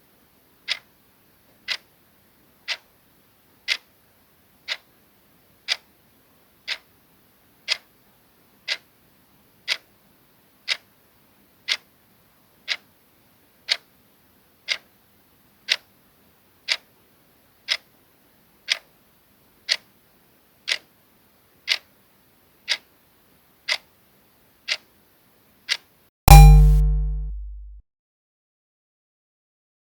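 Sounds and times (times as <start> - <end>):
clock ticking: 6.7 - 6.9, 7.7 - 7.9, 9.7 - 9.9, 13.7 - 13.9, 15.7 - 15.9, 18.7 - 18.9, 21.7 - 21.9, 25.7 - 27.8.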